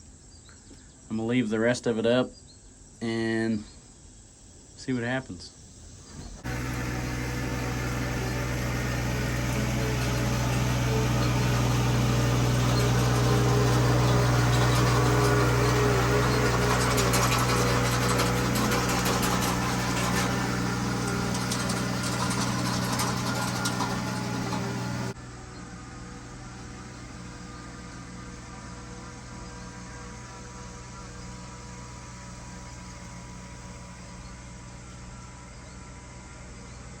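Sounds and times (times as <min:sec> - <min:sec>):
light crackling and rattling: 0:06.4 - 0:25.2
vehicle engine running steadily: 0:06.4 - 0:35.8.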